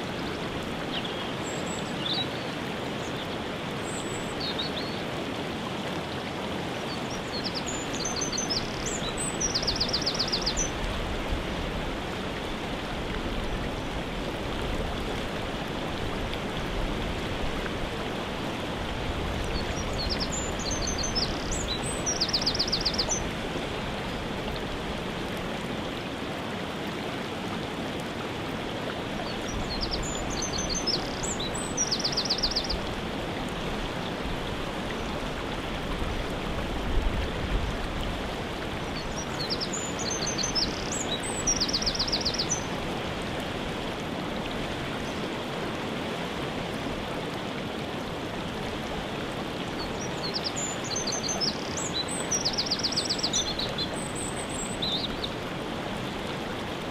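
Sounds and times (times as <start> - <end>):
songbird singing with trill: 7.0 - 10.7, 19.5 - 23.2, 29.3 - 32.8, 39.0 - 42.7, 49.8 - 55.3.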